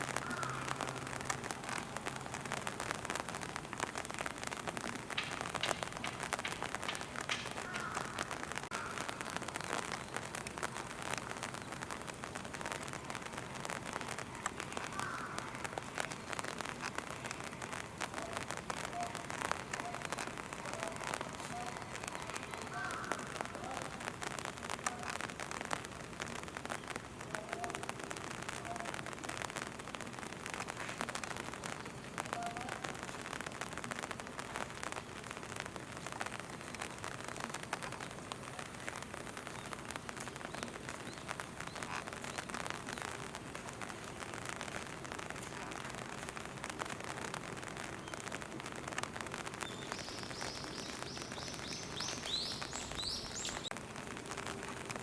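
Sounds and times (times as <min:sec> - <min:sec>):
rain pattering: 0:00.0 - 0:55.0
bird chirping: 0:49.7 - 0:53.7.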